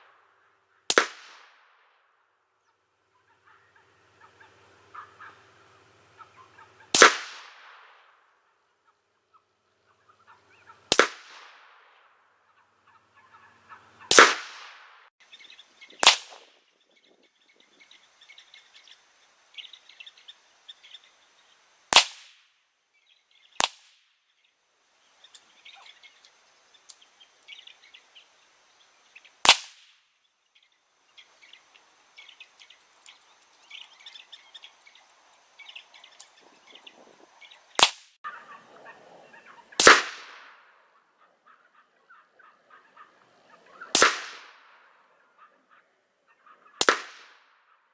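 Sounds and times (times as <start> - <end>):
rifle shots: 0.9 - 1.6, 6.9 - 8.0, 10.9 - 11.8, 14.1 - 15.0, 16.0 - 16.5, 21.9 - 22.4, 29.4 - 29.9, 39.8 - 40.5, 43.9 - 44.7, 46.8 - 47.4
birds chirping faintly: 2.3 - 7.0, 8.2 - 10.9, 12.2 - 14.1, 15.2 - 39.8, 40.5 - 44.0.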